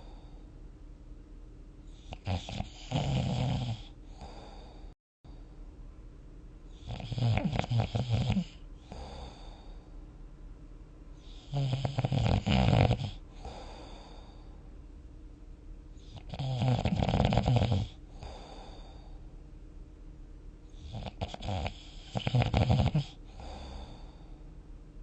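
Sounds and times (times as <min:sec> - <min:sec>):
person snoring: 0:02.0 - 0:05.0, 0:06.8 - 0:09.8, 0:11.2 - 0:14.5, 0:16.0 - 0:19.2, 0:20.8 - 0:24.4.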